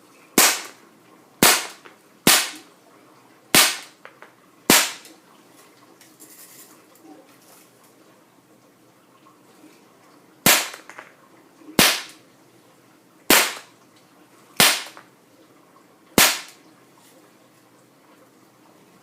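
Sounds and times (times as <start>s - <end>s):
air pistol shots: 0.4s - 0.8s, 1.4s - 2.6s, 3.6s - 4.0s, 4.7s - 5.1s, 10.5s - 11.0s, 11.8s - 12.2s, 13.3s - 13.7s, 14.6s - 15.0s, 16.2s - 16.6s.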